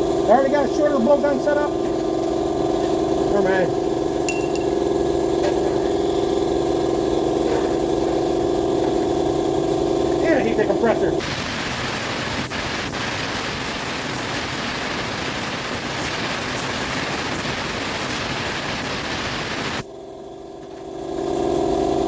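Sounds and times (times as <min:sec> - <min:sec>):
steady hum: 0:00.0 - 0:20.4
air blowgun hissing: 0:11.2 - 0:19.9.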